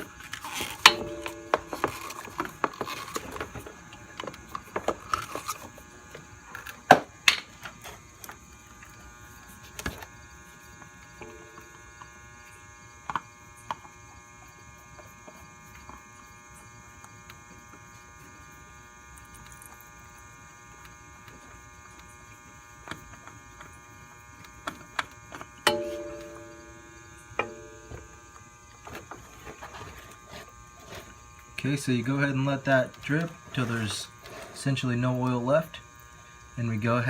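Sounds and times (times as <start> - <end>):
electrical hum: 0.0 - 37.0
metal hand tools clinking: 0.8 - 2.4.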